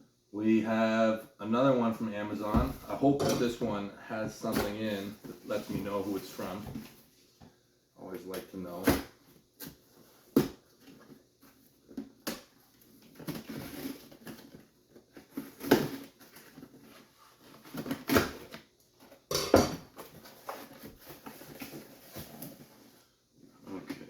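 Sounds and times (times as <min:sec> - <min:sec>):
packaging rustling and crinkling: 0:09.4 - 0:19.3, 0:19.9 - 0:24.0.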